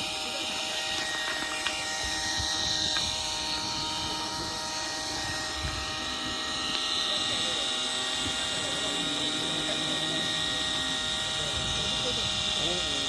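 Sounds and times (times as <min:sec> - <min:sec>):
distant model jet turbine whine: 0:00.0 - 0:13.0.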